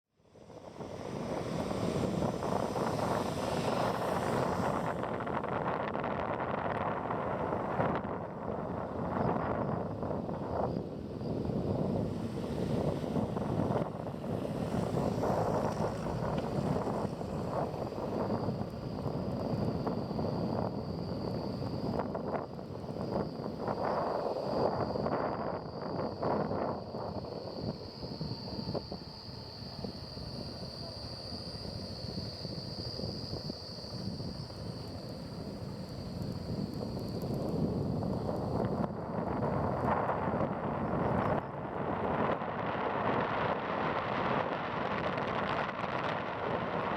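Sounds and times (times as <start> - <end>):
faint high whine: 0.2 - 46.9
wind buffeting microphone: 0.3 - 46.9
scooter engine rumble: 0.8 - 24.8.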